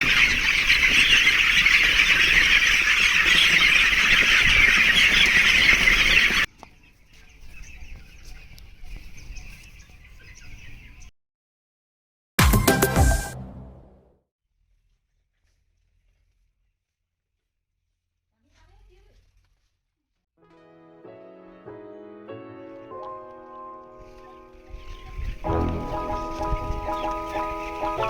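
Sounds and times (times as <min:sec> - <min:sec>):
chickens chirping: 0:00.0 - 0:11.1, 0:22.7 - 0:28.0.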